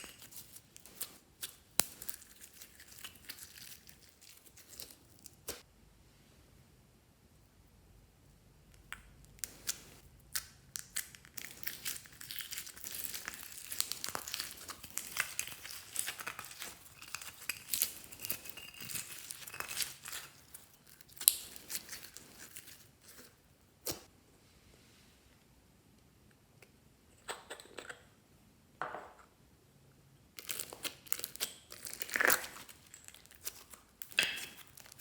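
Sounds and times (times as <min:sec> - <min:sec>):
slime crackling and popping: 0:09.4 - 0:22.9.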